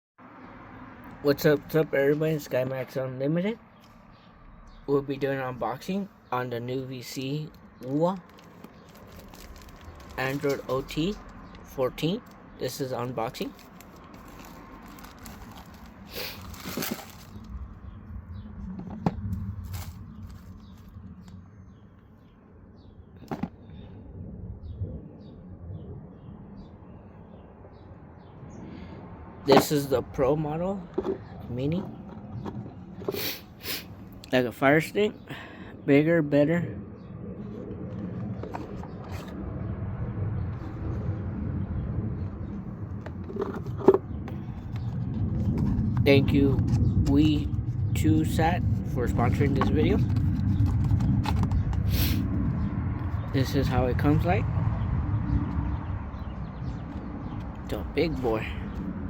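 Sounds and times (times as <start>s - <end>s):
steady low rumble: 3.9s - 59.0s
packaging rustling: 8.2s - 11.4s, 13.4s - 17.6s, 19.5s - 21.0s.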